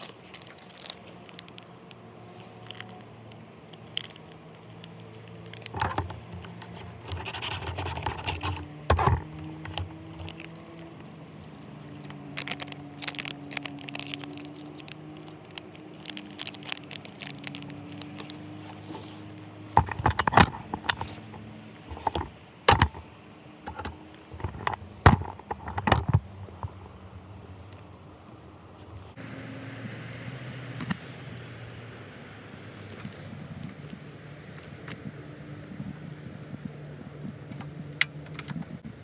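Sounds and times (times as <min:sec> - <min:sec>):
small hard objects clinking: 0:06.9 - 0:23.0.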